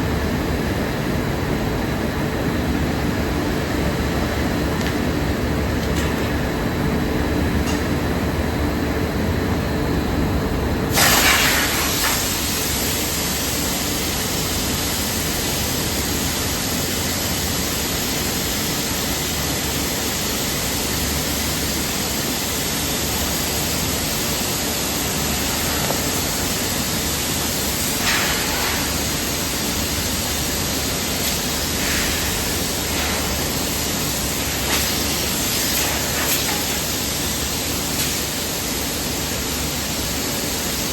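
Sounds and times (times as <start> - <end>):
factory machinery rumble: 0.0 - 40.9
rushing air hiss: 10.9 - 40.9.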